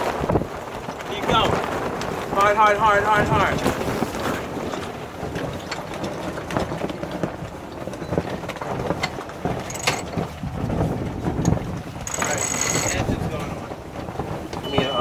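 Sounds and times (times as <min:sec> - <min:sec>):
wind on microphone: 0:00.0 - 0:15.0
winch clicking: 0:09.6 - 0:10.2, 0:11.4 - 0:13.1.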